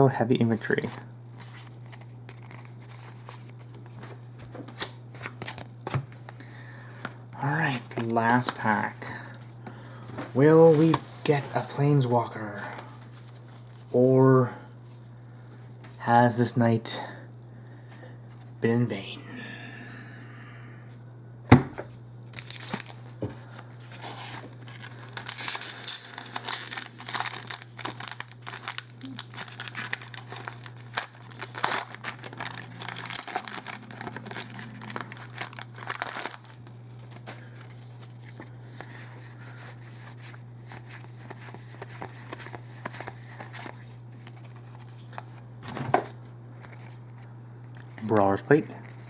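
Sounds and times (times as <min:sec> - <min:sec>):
foil wrapper tearing and crinkling: 0:01.4 - 0:03.8, 0:22.3 - 0:45.4
soft foil rustles: 0:22.3 - 0:45.4.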